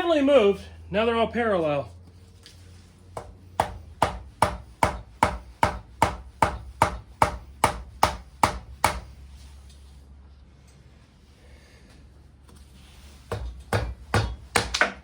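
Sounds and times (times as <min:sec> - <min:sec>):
hammer striking wood block: 0:03.2 - 0:09.1, 0:13.3 - 0:15.0.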